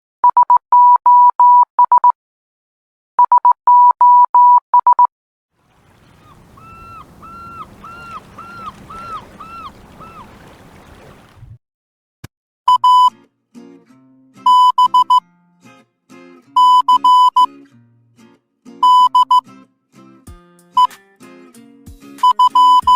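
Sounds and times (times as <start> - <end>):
morse code beeps: 12.7 - 13.1, 16.6 - 17.5, 18.8 - 19.4, 22.2 - 22.9.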